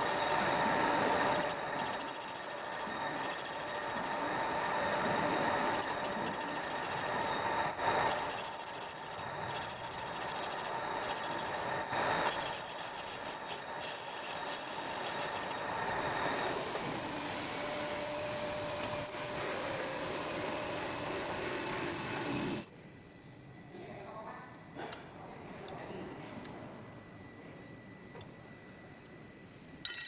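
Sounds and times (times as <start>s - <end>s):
metal lathe running: 0.0s - 22.6s
high rattling hiss of cutting: 8.1s - 15.8s.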